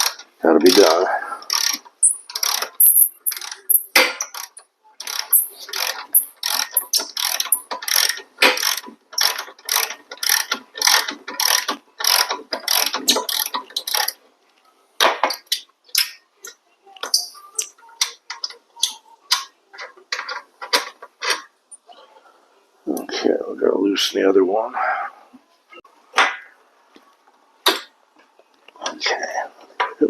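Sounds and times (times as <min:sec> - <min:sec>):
ratchet wrench clicking: 0:01.5 - 0:14.2.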